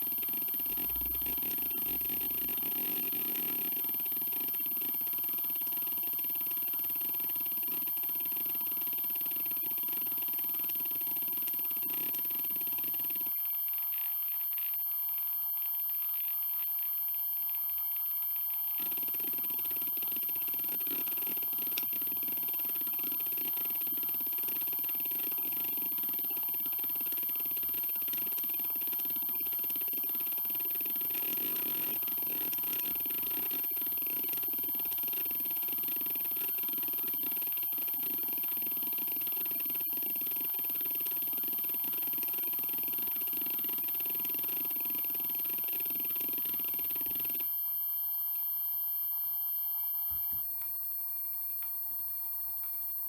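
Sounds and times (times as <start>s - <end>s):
hard drive whining: 0.0s - 16.1s.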